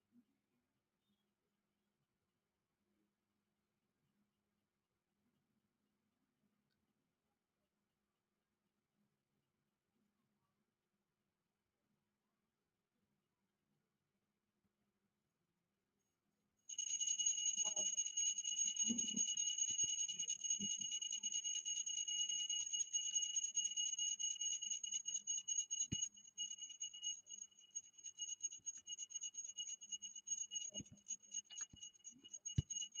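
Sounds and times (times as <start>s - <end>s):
fluttering electronic buzzer tones: 16.7s - 33.0s.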